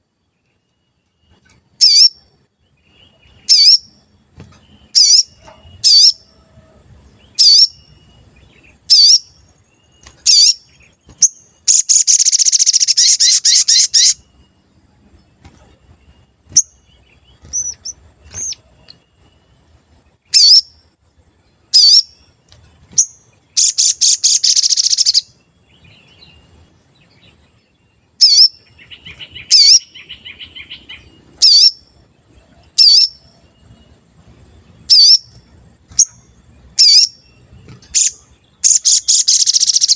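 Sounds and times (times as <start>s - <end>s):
bird chattering rattle: 11.7s - 14.2s, 23.0s - 25.2s, 37.7s - 39.9s.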